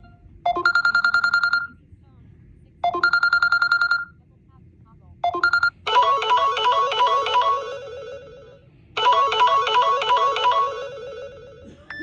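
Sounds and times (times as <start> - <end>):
phone ringtone melody: 0.0 - 1.7, 2.8 - 4.1, 5.2 - 12.0.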